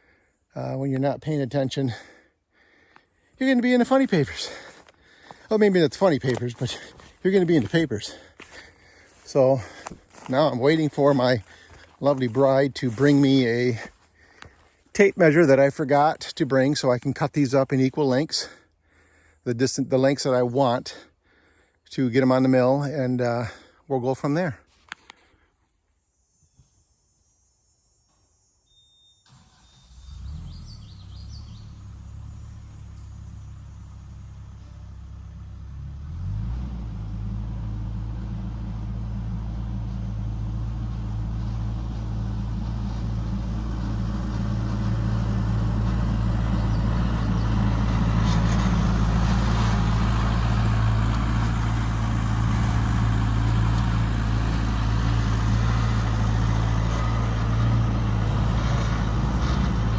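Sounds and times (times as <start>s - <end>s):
vehicle engine approaching: 3.4s - 18.6s, 30.0s - 59.9s.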